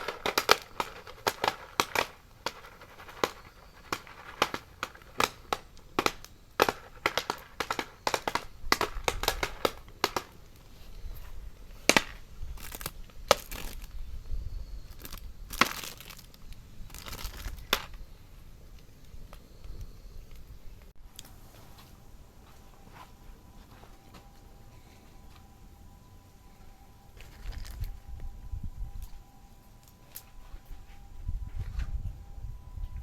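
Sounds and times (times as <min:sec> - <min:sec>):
campfire crackling and popping: 0:00.0 - 0:14.1, 0:14.9 - 0:18.0
low rumble of fire: 0:00.0 - 0:33.0.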